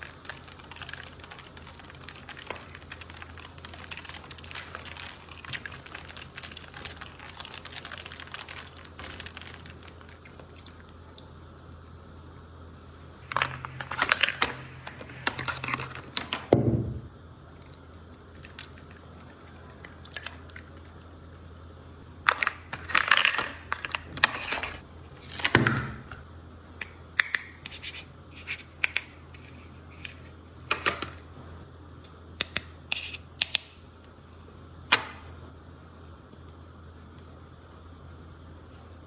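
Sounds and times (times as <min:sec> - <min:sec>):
plastic packaging crinkling: 0:00.0 - 0:10.9
low steady hum: 0:00.0 - 0:39.0.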